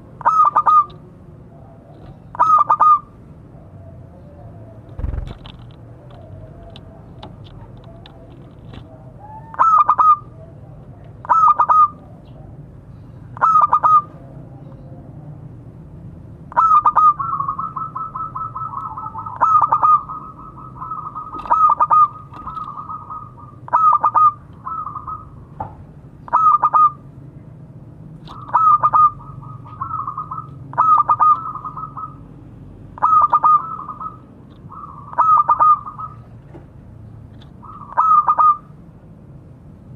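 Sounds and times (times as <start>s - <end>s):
dove cooing: 16.5s - 25.4s, 28.3s - 32.2s, 33.0s - 36.3s, 37.6s - 38.7s.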